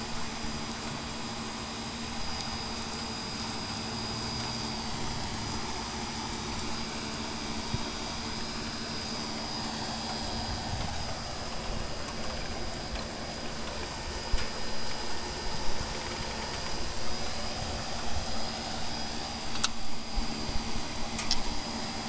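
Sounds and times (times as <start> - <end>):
steady hiss: 0.0 - 22.0
thunder rumbling: 4.1 - 19.2
sharp clicks: 19.5 - 19.8, 21.2 - 21.5.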